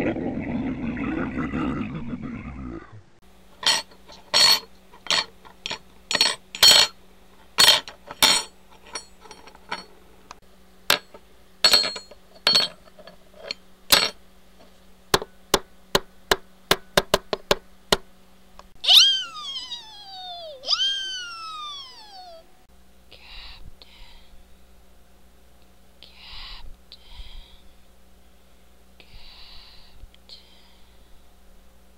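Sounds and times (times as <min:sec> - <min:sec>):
sharp knocks and clicks: 0:15.1 - 0:18.1
pitched cry falling steeply: 0:18.8 - 0:22.4.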